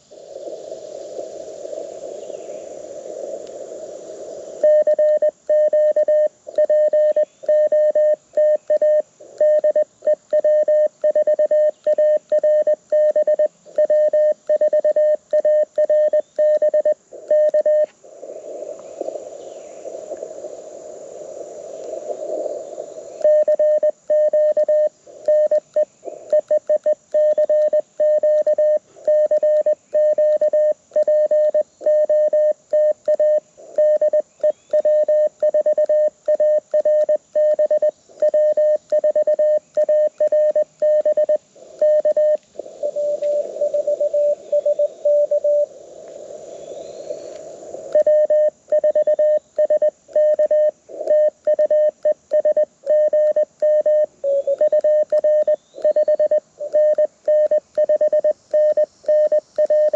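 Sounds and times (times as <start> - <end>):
receiver hiss: 0.0 - 59.9
morse code beeping tone: 4.6 - 17.9, 23.2 - 34.2, 34.8 - 45.7, 48.0 - 59.9.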